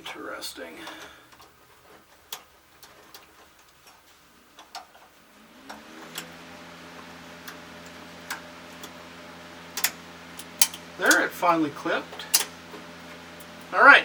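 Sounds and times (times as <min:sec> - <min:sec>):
low steady hum: 0:00.0 - 0:14.0
small parts clicking and tapping: 0:00.8 - 0:05.1, 0:09.7 - 0:11.3, 0:12.1 - 0:12.6.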